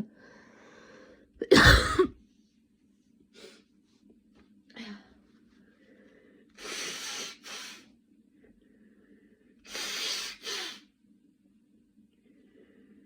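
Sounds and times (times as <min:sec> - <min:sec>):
person blowing nose: 0:06.6 - 0:07.9, 0:09.7 - 0:10.8.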